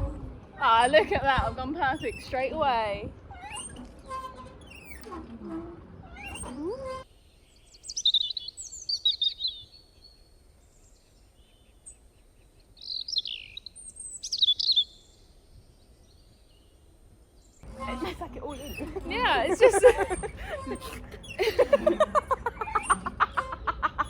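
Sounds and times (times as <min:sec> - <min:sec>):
songbird chirping: 0:06.2 - 0:20.4.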